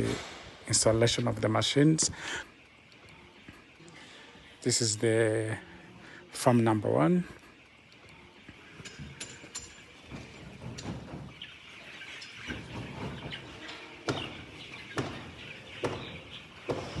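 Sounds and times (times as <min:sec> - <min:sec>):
chickens chirping and peeping: 0:00.7 - 0:17.0
sharp knocks: 0:12.5 - 0:17.0.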